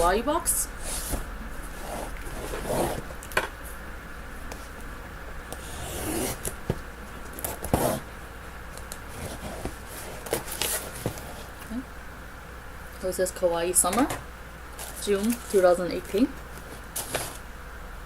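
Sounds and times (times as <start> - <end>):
packaging rustling: 14.7 - 17.4.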